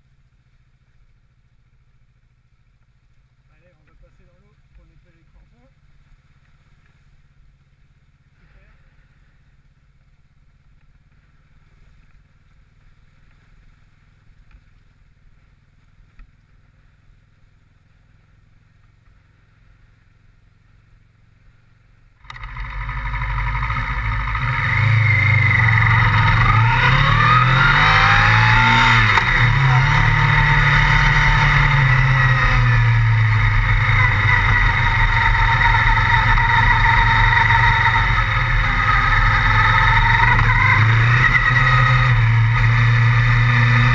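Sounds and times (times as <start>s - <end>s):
motorcycle engine revving: 17.9s - 43.9s.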